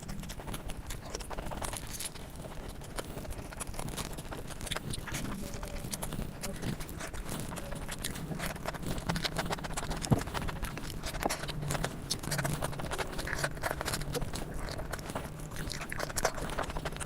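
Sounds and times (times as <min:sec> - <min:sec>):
faint steady hum: 0:00.0 - 0:17.0
wet chewing and mouth smacks: 0:00.0 - 0:17.0.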